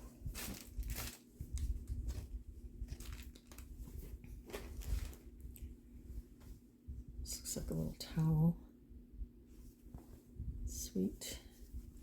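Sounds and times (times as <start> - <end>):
linens rustling and crinkling: 0.0 - 7.1, 9.4 - 12.0.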